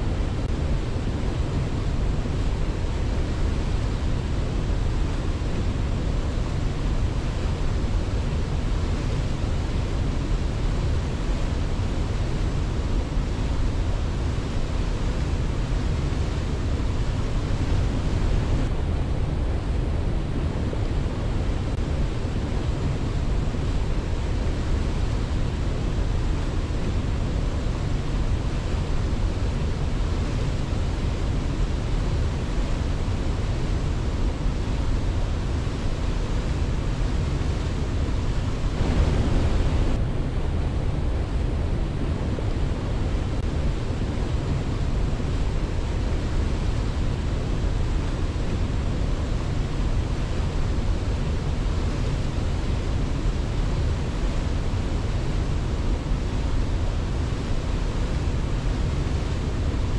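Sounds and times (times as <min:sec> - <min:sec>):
waterfall rushing: 0:38.6 - 0:40.0.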